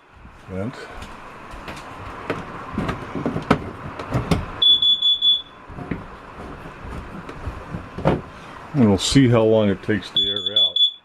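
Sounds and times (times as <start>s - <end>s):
sharp clicks and knocks: 1.6s - 4.6s
high steady alarm beep: 4.6s - 5.6s, 10.2s - 11.0s.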